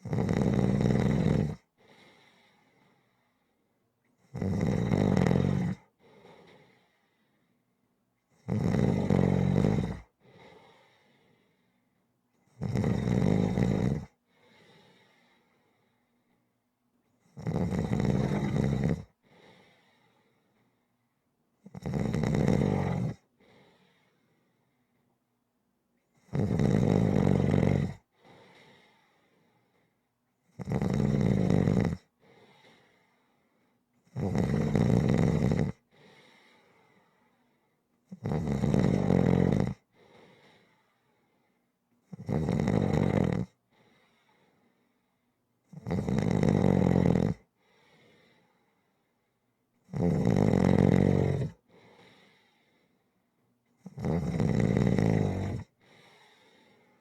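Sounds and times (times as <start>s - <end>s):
loud snoring: 0.0s - 1.7s, 4.2s - 5.9s, 8.4s - 10.2s, 12.5s - 14.2s, 17.3s - 19.2s, 21.6s - 23.3s, 26.2s - 28.0s, 30.5s - 32.1s, 34.1s - 35.9s, 38.1s - 39.8s, 42.1s - 43.6s, 45.7s - 47.5s, 49.9s - 51.6s, 53.8s - 56.2s
faint breath: 1.7s - 3.8s, 5.9s - 7.8s, 10.2s - 12.1s, 14.2s - 16.6s, 19.2s - 21.0s, 23.2s - 25.1s, 28.0s - 30.1s, 32.1s - 33.9s, 35.8s - 37.8s, 39.8s - 41.8s, 43.6s - 45.3s, 47.5s - 49.4s, 51.6s - 53.5s, 55.6s - 57.0s.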